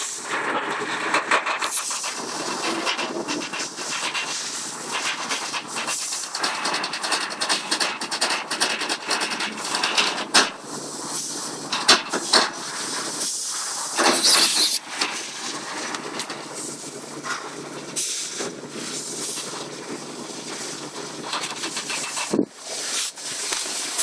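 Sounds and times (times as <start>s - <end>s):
bird hissing: 14.1s - 14.8s.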